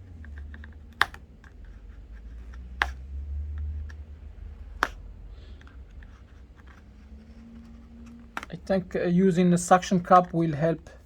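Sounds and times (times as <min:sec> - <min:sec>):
sharp plastic clicks: 0:00.2 - 0:01.8, 0:02.4 - 0:06.8.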